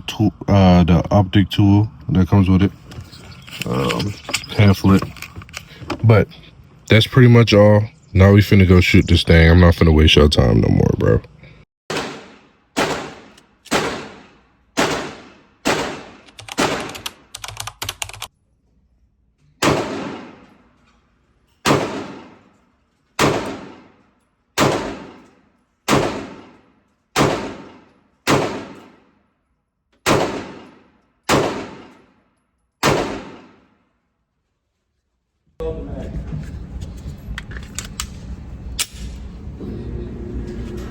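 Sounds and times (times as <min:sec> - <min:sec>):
pistol shots echoing: 0:11.9 - 0:17.0, 0:19.6 - 0:20.6, 0:21.6 - 0:22.6, 0:23.2 - 0:29.2, 0:30.0 - 0:32.2, 0:32.8 - 0:33.8.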